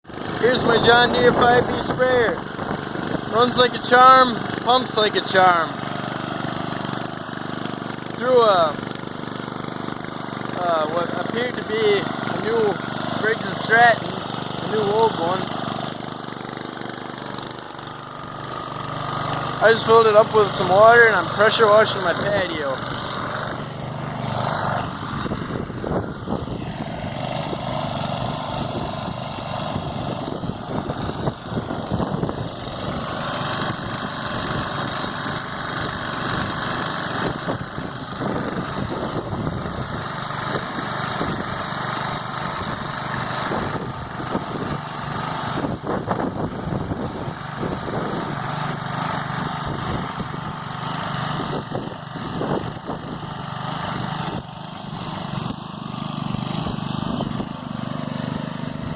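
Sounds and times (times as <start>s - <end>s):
small engine running: 0.0s - 58.9s.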